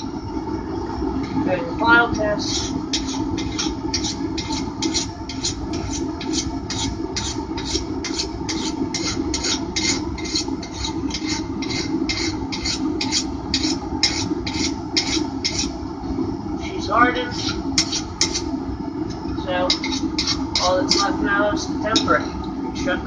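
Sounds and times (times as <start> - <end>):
forge hum: 0.0 - 23.0
file rasping across steel blade: 2.5 - 15.7, 19.7 - 20.7.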